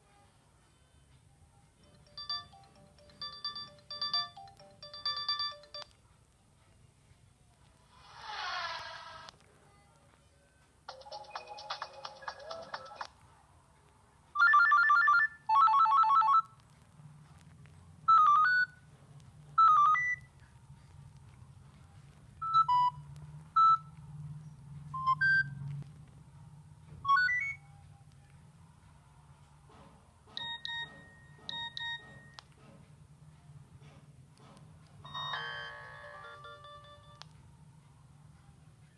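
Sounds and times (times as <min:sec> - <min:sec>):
phone alert tones: 0:01.9 - 0:05.9
repeated beeps: 0:23.6 - 0:23.9.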